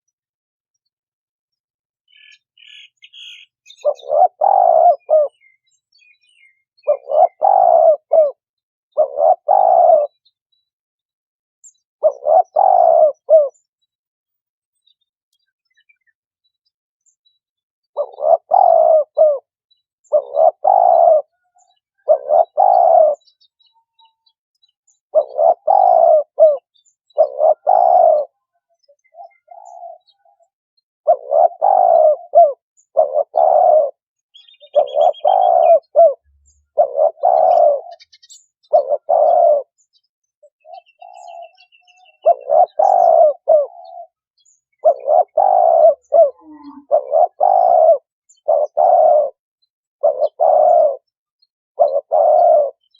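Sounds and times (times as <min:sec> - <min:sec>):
dove cooing: 0:02.6 - 0:05.6, 0:06.3 - 0:10.3, 0:12.0 - 0:13.6, 0:18.0 - 0:23.4, 0:25.1 - 0:39.8, 0:40.5 - 0:49.4, 0:50.0 - 0:51.1, 0:51.8 - 0:52.9.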